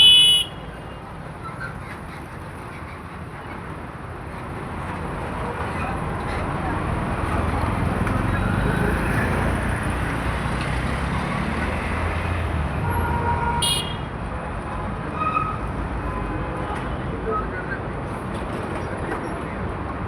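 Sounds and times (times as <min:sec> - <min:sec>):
car horn toots: 0:00.0 - 0:00.8, 0:12.9 - 0:14.1
road traffic rumble: 0:00.0 - 0:20.0.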